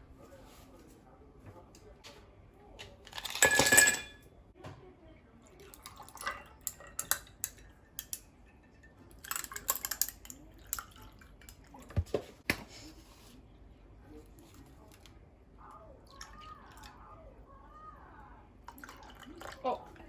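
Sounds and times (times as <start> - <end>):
dishes clinking and knocking: 3.1 - 4.8.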